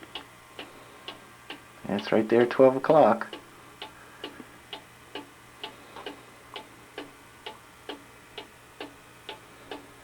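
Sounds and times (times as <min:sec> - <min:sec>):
clock ticking: 0:03.2 - 0:09.9.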